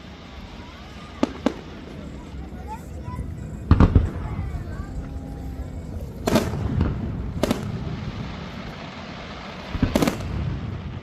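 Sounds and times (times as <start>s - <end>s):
firework bangs: 0.0s - 11.0s
steady low rumble: 0.0s - 11.0s.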